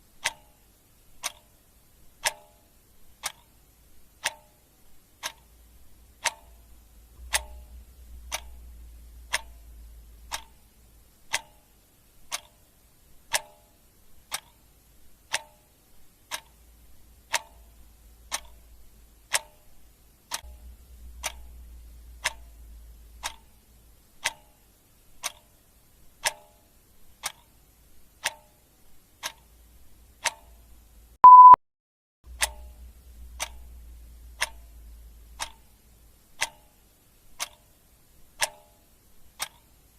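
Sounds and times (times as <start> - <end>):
clock ticking: 0.0 - 31.6, 32.3 - 39.9
faint low hum: 0.0 - 31.6, 32.3 - 39.9
short loud beep: 31.2 - 31.6.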